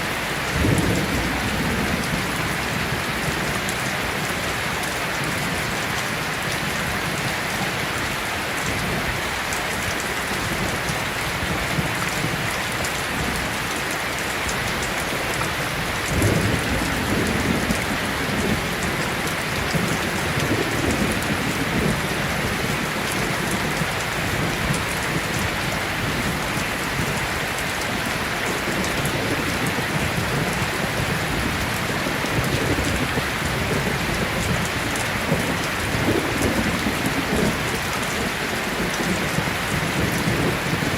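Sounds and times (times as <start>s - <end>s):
steady rain falling: 0.0s - 40.9s
thunder rumbling: 0.3s - 6.6s, 14.6s - 40.9s.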